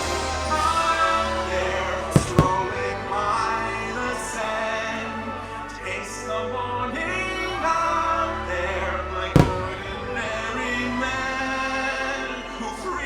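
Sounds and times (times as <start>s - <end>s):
orchestral music with singing: 0.0s - 13.0s
firework bang: 2.2s - 3.2s, 9.4s - 10.6s.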